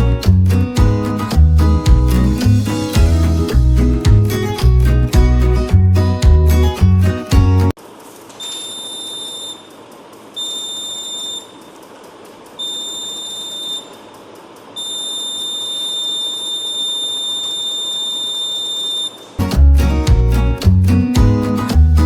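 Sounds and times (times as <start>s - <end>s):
piezo buzzer alarm tone: 8.4s - 9.7s, 10.4s - 11.6s, 12.6s - 14.0s, 14.8s - 19.4s.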